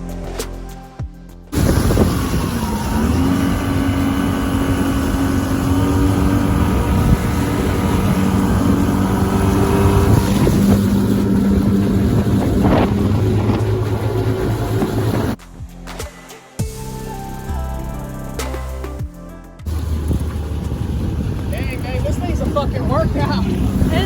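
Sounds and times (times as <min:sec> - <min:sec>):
outboard motor running: 0:01.5 - 0:15.4, 0:19.7 - 0:24.0
wind buffeting microphone: 0:01.5 - 0:15.4, 0:19.7 - 0:24.0.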